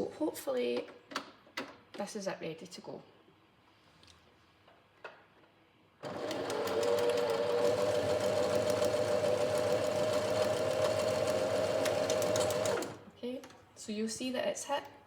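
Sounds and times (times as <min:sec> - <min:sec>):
sewing machine humming: 0:06.0 - 0:13.1.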